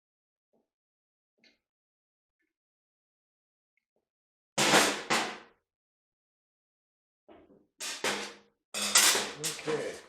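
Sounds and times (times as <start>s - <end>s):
metal tool clanks: 8.8s - 9.9s.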